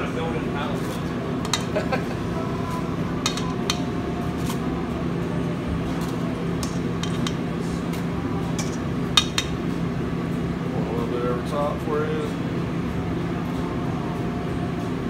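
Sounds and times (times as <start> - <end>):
kitchen equipment hum: 0.0 - 15.0
dishes and utensils clinking: 1.4 - 1.9, 3.2 - 3.9, 6.6 - 7.5, 8.5 - 9.6.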